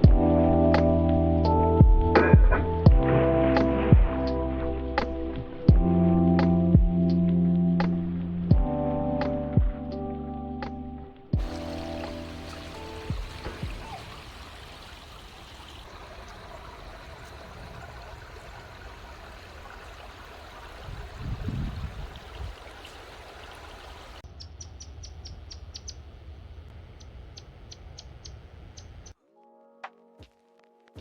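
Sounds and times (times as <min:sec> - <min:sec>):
low rumble: 0:01.6 - 0:09.9
outdoor background noise: 0:10.6 - 0:29.2.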